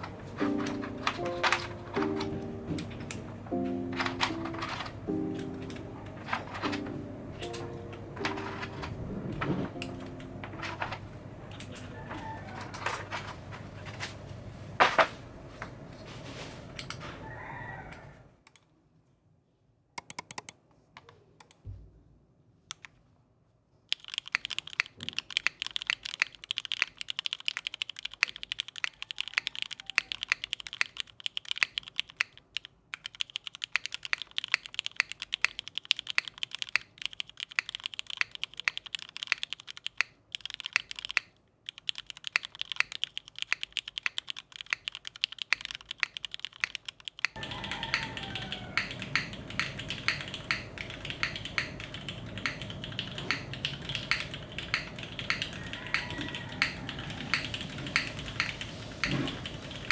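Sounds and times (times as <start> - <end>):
mechanical keyboard keystrokes: 0.0 - 14.2, 20.0 - 20.6, 23.9 - 59.9
steady hiss: 47.4 - 59.9.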